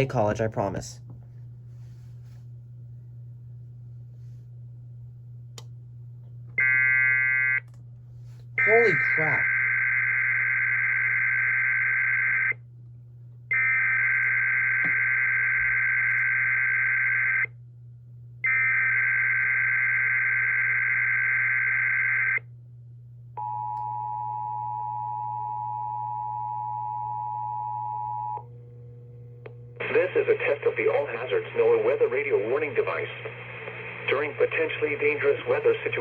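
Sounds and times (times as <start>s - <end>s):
warbling data tones: 8.6s - 12.6s.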